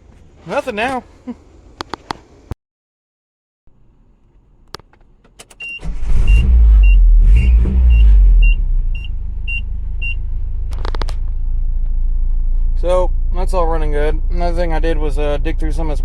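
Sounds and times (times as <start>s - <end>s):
car engine starting and idling: 4.5s - 16.0s.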